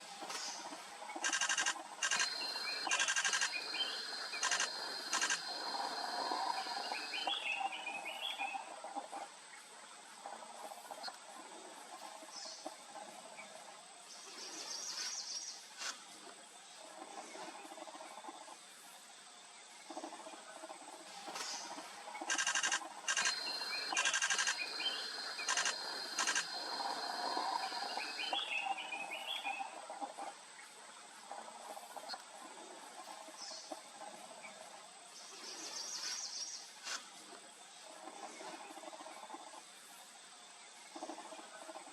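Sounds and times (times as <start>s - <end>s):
birds chattering and chirping: 0.0s - 9.2s, 19.8s - 30.7s
high insect whine: 0.1s - 8.5s, 20.8s - 29.8s
buzzy rasping calls: 22.3s - 28.5s.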